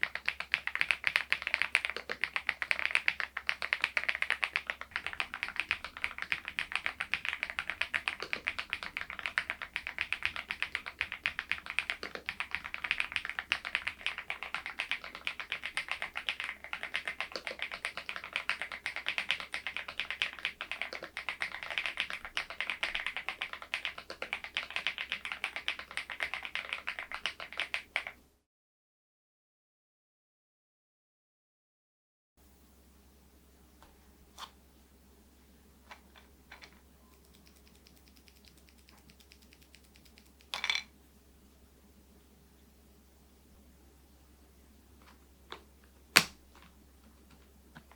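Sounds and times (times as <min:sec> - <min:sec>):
mechanical keyboard typing: 0:00.0 - 0:28.2, 0:36.5 - 0:40.6.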